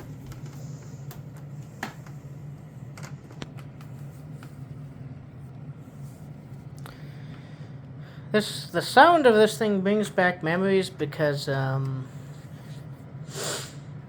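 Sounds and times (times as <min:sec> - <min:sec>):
vacuum cleaner running: 0:00.0 - 0:09.8.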